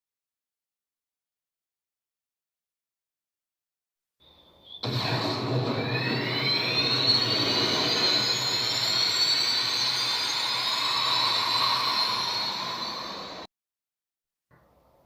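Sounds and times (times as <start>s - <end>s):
machine whine rising in pitch: 4.6s - 13.5s
low hum: 4.8s - 13.5s.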